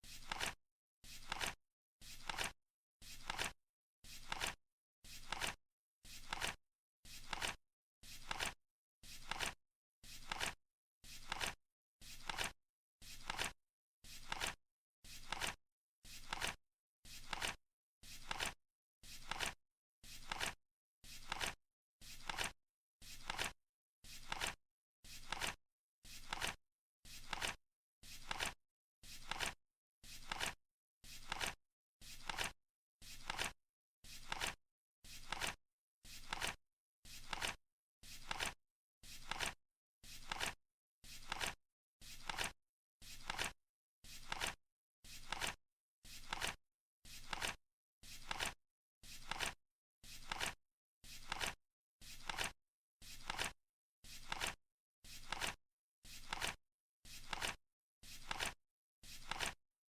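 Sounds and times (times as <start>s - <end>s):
flip clock cards flipping: 0.2s - 0.6s, 1.2s - 1.6s, 2.2s - 2.5s, 3.2s - 3.5s, 4.2s - 4.6s, 5.2s - 5.6s, 6.2s - 6.6s, 7.2s - 7.6s, 8.2s - 8.6s, 9.2s - 9.6s, 10.2s - 10.6s, 11.2s - 11.6s, 12.2s - 12.5s, 13.2s - 13.5s, 14.2s - 14.6s, 15.2s - 15.6s, 16.2s - 16.6s, 17.2s - 17.6s, 18.2s - 18.6s, 19.2s - 19.6s, 20.2s - 20.6s, 21.2s - 21.6s, 22.2s - 22.5s, 23.2s - 23.5s, 24.2s - 24.6s, 25.2s - 25.6s, 26.2s - 26.6s, 27.2s - 27.6s, 28.2s - 28.6s, 29.2s - 29.6s, 30.2s - 30.6s, 31.2s - 31.6s, 32.2s - 32.5s, 33.2s - 33.5s, 34.2s - 34.6s, 35.2s - 35.6s, 36.2s - 36.6s, 37.2s - 37.6s, 38.2s - 38.6s, 39.2s - 39.6s, 40.2s - 40.6s, 41.2s - 41.6s, 42.2s - 42.5s, 43.2s - 43.5s, 44.2s - 44.6s, 45.2s - 45.6s, 46.2s - 46.6s, 47.2s - 47.6s, 48.2s - 48.6s, 49.2s - 49.6s, 50.2s - 50.6s, 51.2s - 51.6s, 52.2s - 52.5s, 53.2s - 53.5s, 54.2s - 54.6s, 55.2s - 55.6s, 56.2s - 56.6s, 57.2s - 57.6s, 58.2s - 58.6s, 59.2s - 59.6s.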